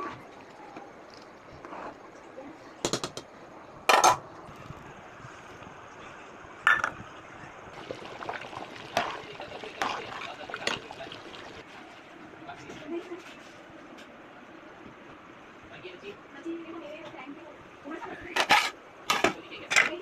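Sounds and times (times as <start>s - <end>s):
liquid sounds: 7.7s - 11.9s.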